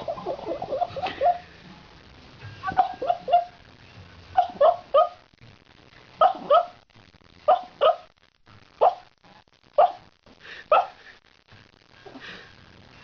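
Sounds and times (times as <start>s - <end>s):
dog barking: 2.7s - 3.6s, 4.4s - 5.2s, 6.2s - 6.8s, 7.5s - 8.1s, 8.8s - 9.1s, 9.8s - 10.0s, 10.7s - 11.0s.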